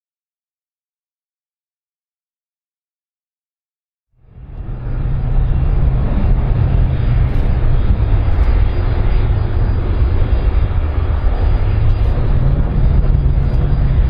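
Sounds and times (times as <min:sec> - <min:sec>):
airplane engines rumbling: 0:04.2 - 0:14.0.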